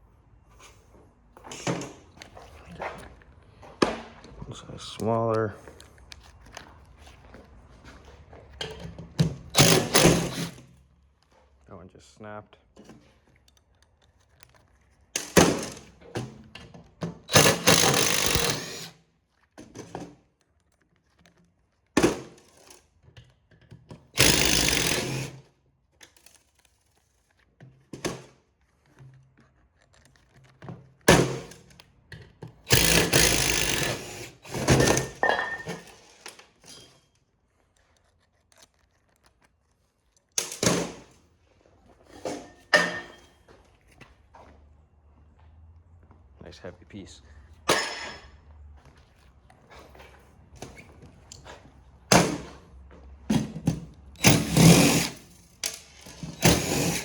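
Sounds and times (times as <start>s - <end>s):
metal parts thunking and knocking: 32.2s - 37.0s, 40.4s - 41.1s, 42.2s - 43.4s, 47.6s - 48.4s.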